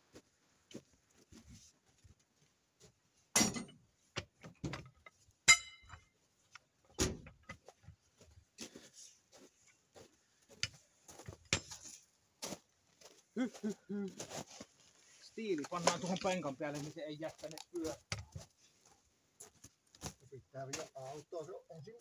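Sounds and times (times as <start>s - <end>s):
metal tools knocking and clanking: 3.3s - 6.1s, 11.4s - 12.0s.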